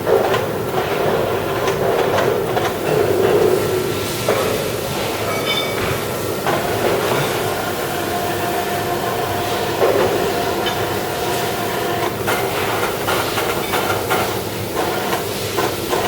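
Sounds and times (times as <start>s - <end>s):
lathe running: 4.7s - 13.2s.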